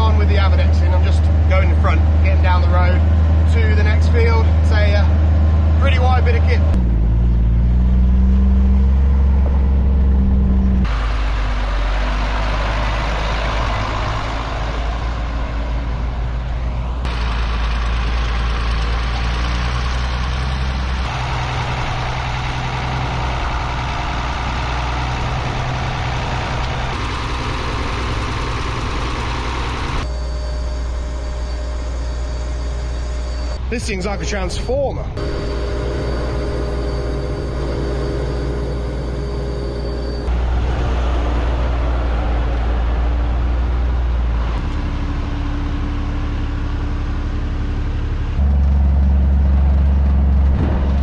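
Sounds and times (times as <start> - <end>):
vehicle engines running: 0.0 - 51.0.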